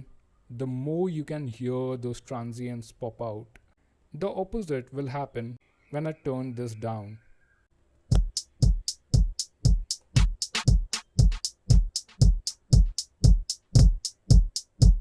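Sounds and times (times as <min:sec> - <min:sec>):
hi-hat and snare hits: 0:08.1 - 0:15.0
kick drum hits: 0:08.1 - 0:15.0.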